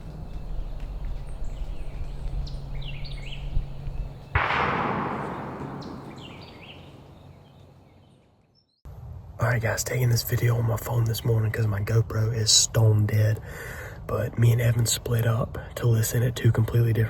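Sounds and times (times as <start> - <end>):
songbirds chirping: 0.0 - 8.9
shotgun blast with echo: 4.4 - 7.4.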